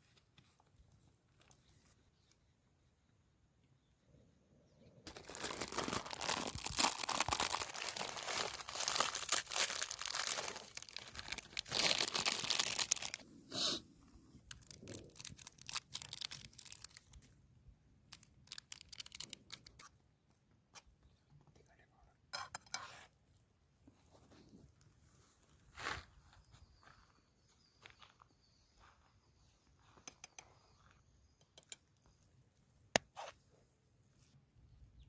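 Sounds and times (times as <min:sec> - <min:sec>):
plastic packet crinkling and tearing: 0:05.1 - 0:13.2, 0:14.4 - 0:17.2, 0:18.1 - 0:19.9.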